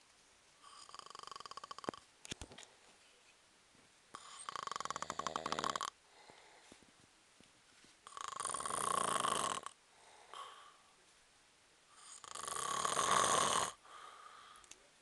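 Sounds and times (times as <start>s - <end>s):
person snoring: 0.6s - 2.0s, 4.2s - 5.9s, 8.1s - 10.8s, 12.0s - 14.4s.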